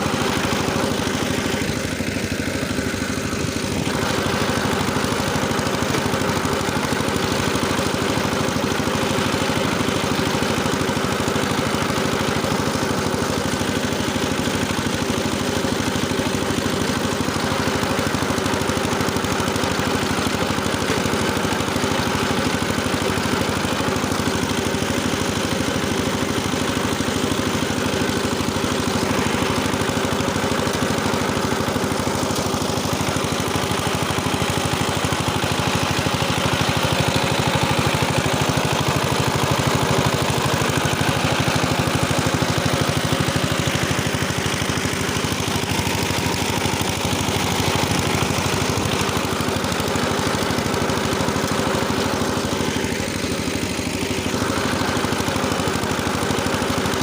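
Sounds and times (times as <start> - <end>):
tiller engine droning: 0.0 - 57.0.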